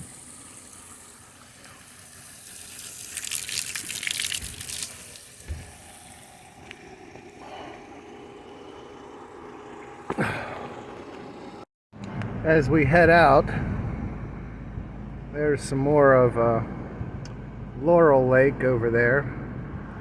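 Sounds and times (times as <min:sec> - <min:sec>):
spring water running: 0:00.0 - 0:07.4
steady low hum: 0:05.3 - 0:20.0.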